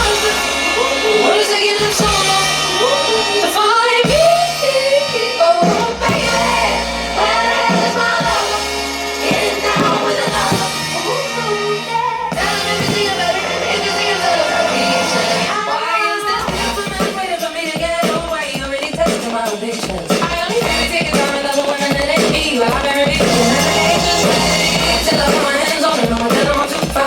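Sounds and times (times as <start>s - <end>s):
drum beat: 0.0s - 11.1s, 12.4s - 13.9s, 16.4s - 27.0s
bass notes: 0.0s - 15.5s, 23.1s - 25.4s
person singing: 0.0s - 27.0s.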